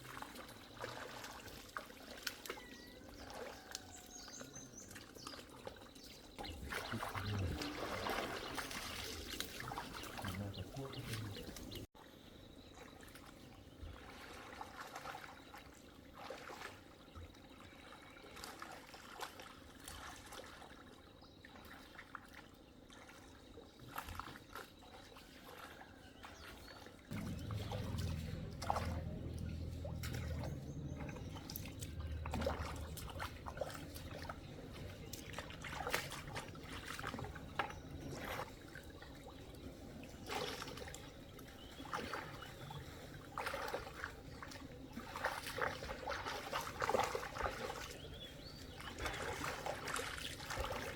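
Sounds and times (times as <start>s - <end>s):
water trickling and splashing: 0.0s - 50.9s
low steady rumble: 27.1s - 38.2s.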